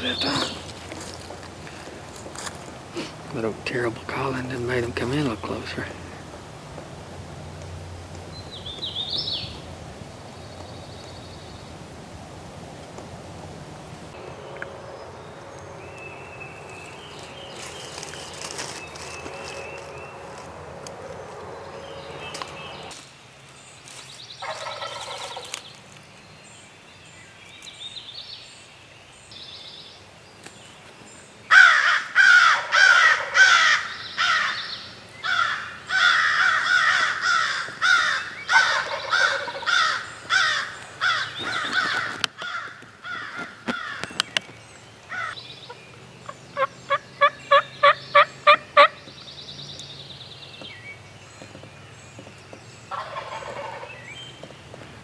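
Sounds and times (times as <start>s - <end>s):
turkey yelps: 24.4s - 25.5s, 35.3s - 41.2s, 46.6s - 49.0s, 52.9s - 53.9s
turkey gobbling: 24.4s - 25.6s, 32.3s - 34.6s, 35.4s - 40.7s, 46.6s - 49.0s, 52.9s - 53.9s.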